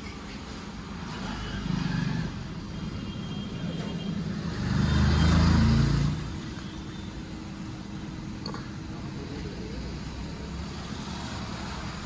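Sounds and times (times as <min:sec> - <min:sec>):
road traffic: 0:00.0 - 0:12.0
vehicle engine rumble passing: 0:00.9 - 0:06.7.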